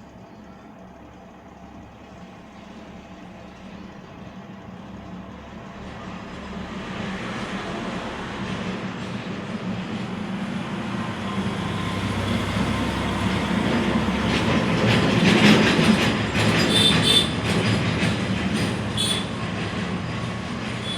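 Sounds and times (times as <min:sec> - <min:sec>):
clattering with high squeals: 0:11.0 - 0:20.9.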